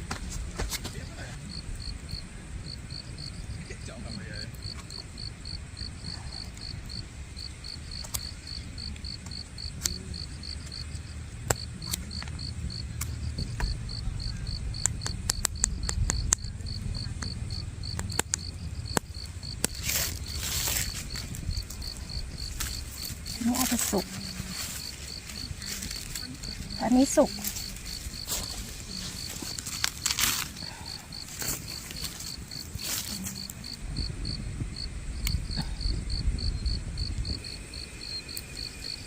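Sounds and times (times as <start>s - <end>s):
cricket chirping: 0.6s - 39.0s
sharp clicks: 14.8s - 16.5s.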